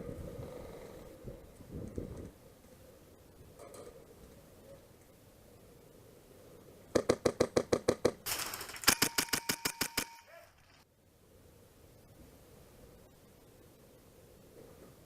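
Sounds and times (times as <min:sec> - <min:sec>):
airsoft gun automatic bursts: 0:08.6 - 0:10.3.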